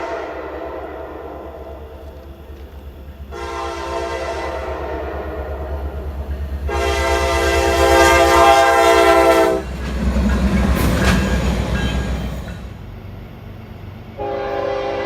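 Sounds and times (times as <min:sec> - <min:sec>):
locomotive air horn chord: 0:00.0 - 0:01.9, 0:03.3 - 0:06.0, 0:06.7 - 0:09.7, 0:14.2 - 0:15.0
train rumble and rail clatter: 0:00.0 - 0:15.0.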